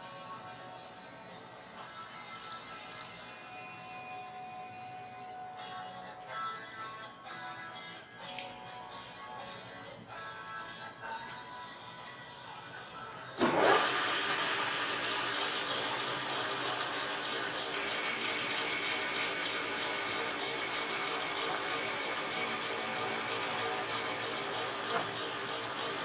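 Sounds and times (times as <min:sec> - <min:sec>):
machine motor running with hiss: 0:13.4 - 0:26.0.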